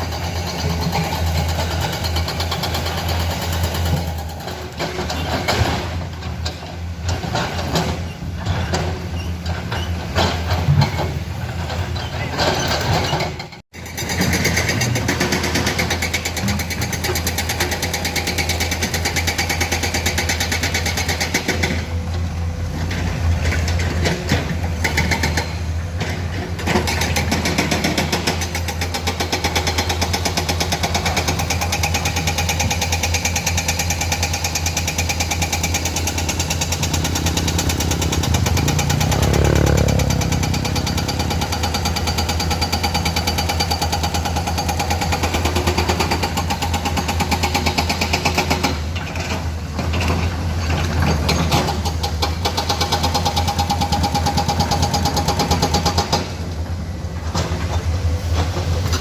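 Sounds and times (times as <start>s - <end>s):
diesel engine running: 14.4s - 59.0s.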